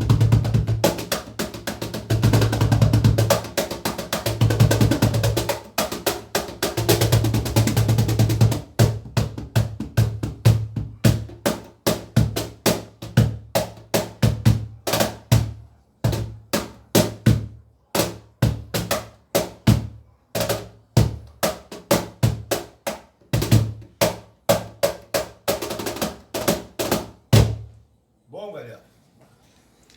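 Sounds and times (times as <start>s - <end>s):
hand drum playing: 0.0s - 15.5s.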